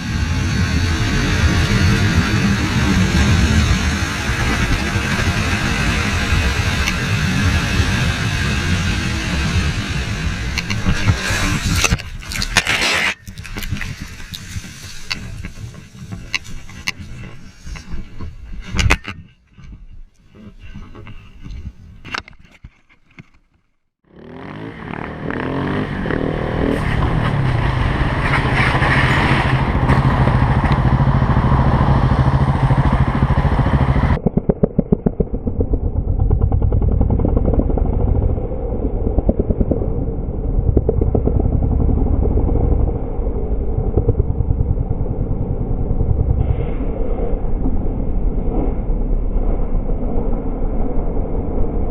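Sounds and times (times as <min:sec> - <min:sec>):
muffled pulsing engine: 0:00.0 - 0:21.9, 0:24.1 - 0:51.9
wind noise: 0:00.0 - 0:23.4, 0:25.5 - 0:51.9
motorcycle engine running: 0:24.0 - 0:46.6.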